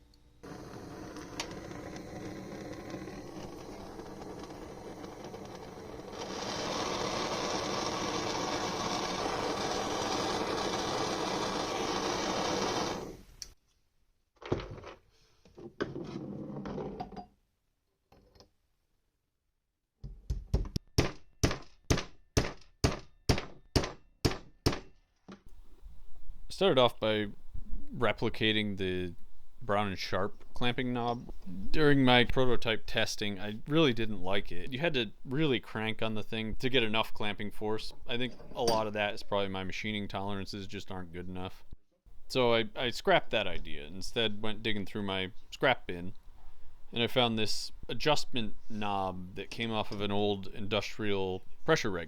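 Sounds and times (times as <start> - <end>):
machine tool motor running: 0.4 - 13.3.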